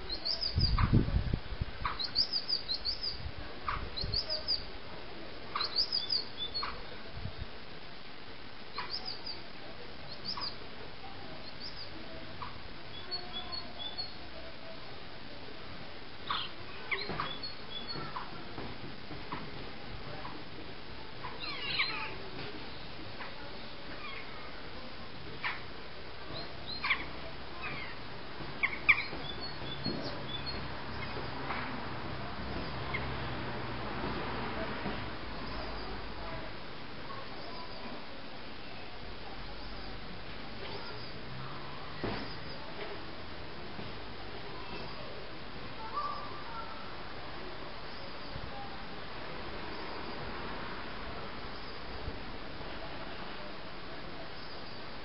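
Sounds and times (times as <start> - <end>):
birds chirping: 0.0 - 1.0, 1.8 - 4.7, 5.5 - 7.0, 8.7 - 9.4, 10.1 - 10.6, 11.3 - 14.2, 16.2 - 18.4, 21.2 - 24.4, 26.3 - 31.4, 40.6 - 41.2
steady background hiss: 0.0 - 55.0
jackdaws calling: 8.8 - 9.4, 28.6 - 31.2.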